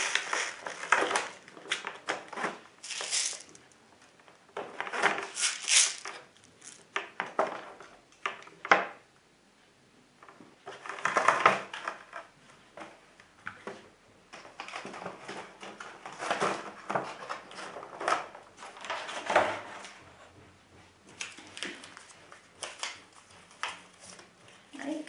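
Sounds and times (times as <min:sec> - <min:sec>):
packaging rustling: 0:00.0 - 0:03.8, 0:04.8 - 0:07.0.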